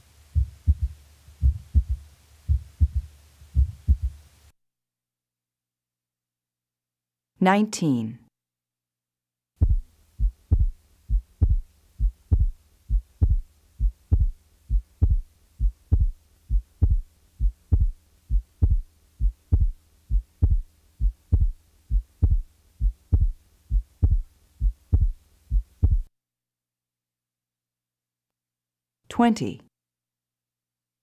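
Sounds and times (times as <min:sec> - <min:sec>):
faint steady hum: 0:00.0 - 0:04.5, 0:09.6 - 0:26.1
heartbeat low thuds: 0:00.4 - 0:04.2, 0:09.6 - 0:26.1.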